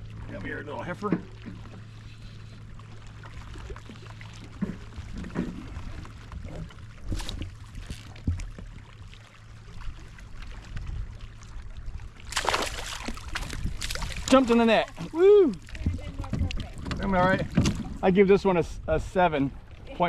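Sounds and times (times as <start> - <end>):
water sloshing against kayak: 0.0 - 20.0
fish splashing: 11.9 - 16.8.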